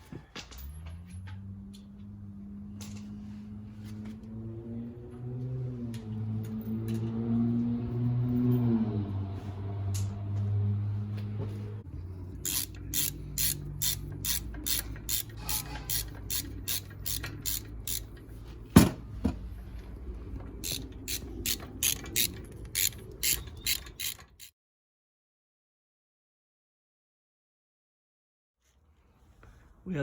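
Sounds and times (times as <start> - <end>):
ratchet wrench clicking: 12.4 - 18.2, 20.6 - 24.5.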